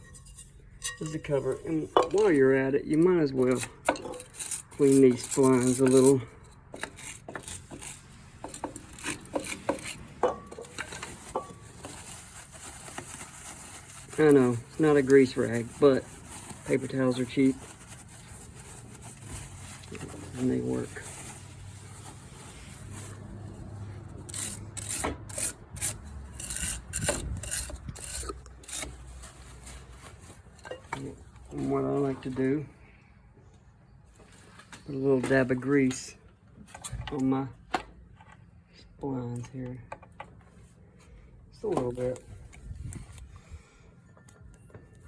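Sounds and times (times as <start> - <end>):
paper towel scraping metal: 3.1 - 6.3, 10.8 - 24.9.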